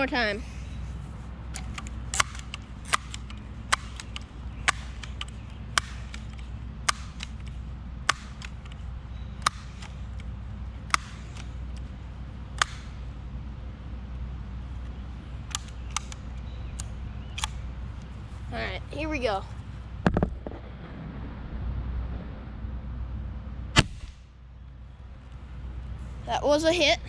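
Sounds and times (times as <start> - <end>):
steady low hum: 0.0 - 27.0
air rifle pump clicks: 1.5 - 8.8, 9.4 - 10.3, 15.5 - 17.6.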